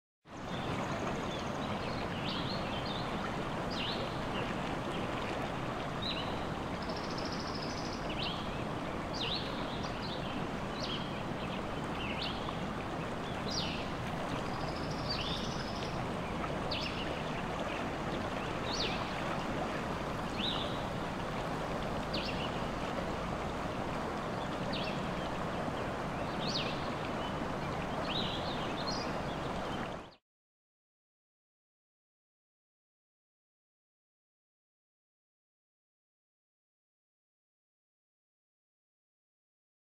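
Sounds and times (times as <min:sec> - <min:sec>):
steady rushing forest background: 0:00.5 - 0:30.2.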